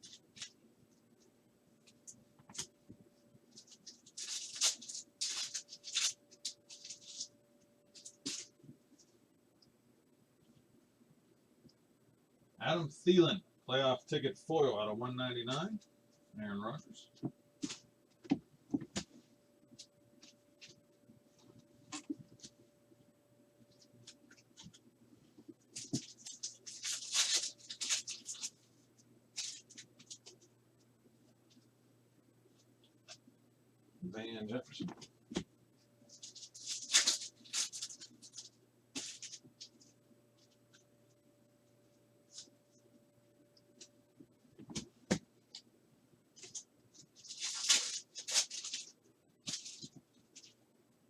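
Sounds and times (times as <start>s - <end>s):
trading cards rustling: 3.5s - 7.3s, 7.9s - 8.5s, 25.7s - 28.6s, 29.4s - 30.4s, 36.1s - 39.9s, 46.4s - 50.6s.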